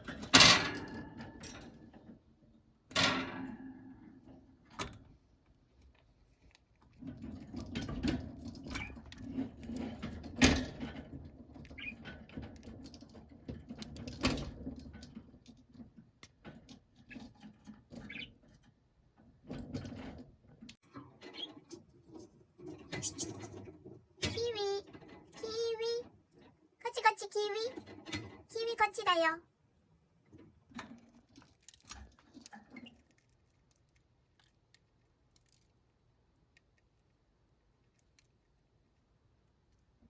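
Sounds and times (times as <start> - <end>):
birds scratching and rustling in cage: 3.5 - 24.2, 30.2 - 36.1.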